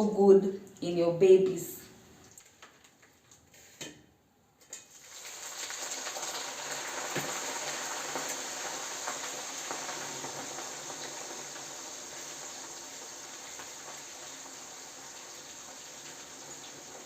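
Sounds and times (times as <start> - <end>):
fish sizzling in oil: 4.8 - 17.0.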